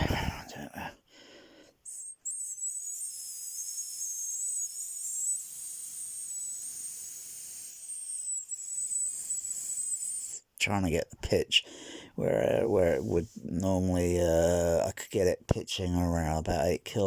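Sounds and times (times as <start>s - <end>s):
high-pitched lip whistling: 1.8s - 10.5s.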